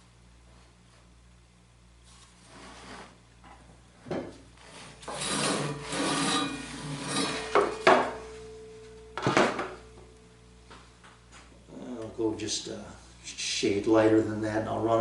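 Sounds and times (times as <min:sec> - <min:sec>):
saw fence sliding on rail: 0:04.6 - 0:08.2
wood rubbing and scraping: 0:04.6 - 0:08.2.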